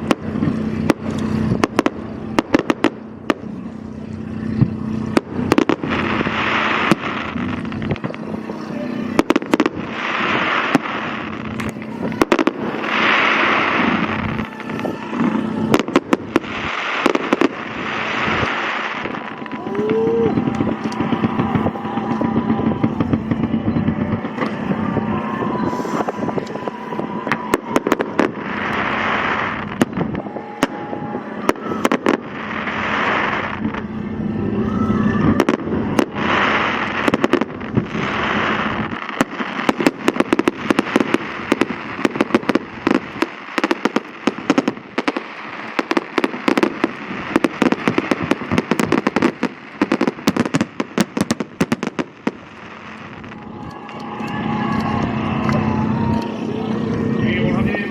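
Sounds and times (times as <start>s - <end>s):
fireworks bangs and pops: 0.0s - 25.0s, 25.6s - 34.0s, 35.2s - 56.4s
boat engine hum: 0.0s - 38.8s, 52.4s - 57.9s
fireworks crackling: 0.0s - 57.9s
fireworks hissing: 0.0s - 57.9s.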